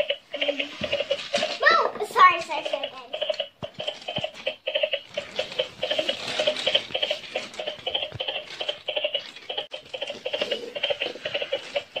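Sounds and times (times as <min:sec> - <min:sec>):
toy playing electronic tune: 0:02.7 - 0:12.0.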